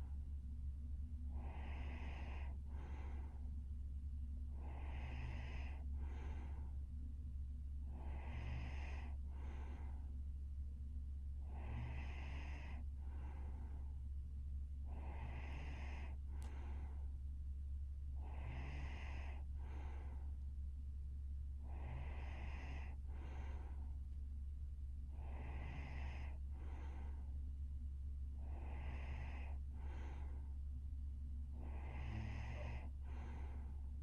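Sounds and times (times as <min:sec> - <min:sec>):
steady low hum: 0:00.0 - 0:34.0
woman snoring: 0:01.3 - 0:03.0, 0:04.6 - 0:06.3, 0:07.9 - 0:09.8, 0:11.4 - 0:12.9, 0:14.9 - 0:16.6, 0:18.2 - 0:20.0, 0:21.6 - 0:23.6, 0:25.1 - 0:27.1, 0:28.4 - 0:30.3, 0:31.5 - 0:33.7.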